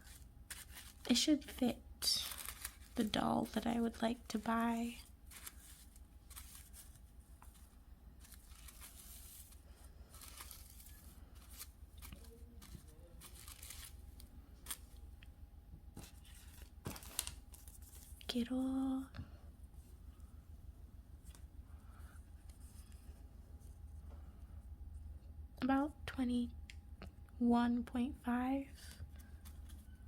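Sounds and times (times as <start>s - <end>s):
packaging rustling and tearing: 0.0s - 1.2s, 2.0s - 3.6s, 4.8s - 14.0s, 16.0s - 18.2s.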